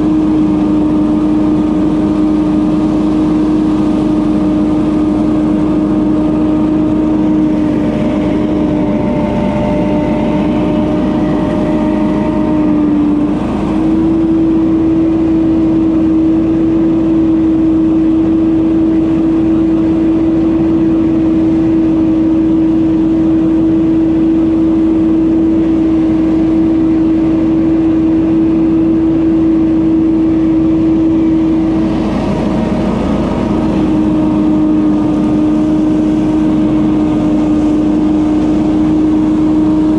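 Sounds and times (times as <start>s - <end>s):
leaf blower running: 0.0s - 16.4s, 27.4s - 39.9s.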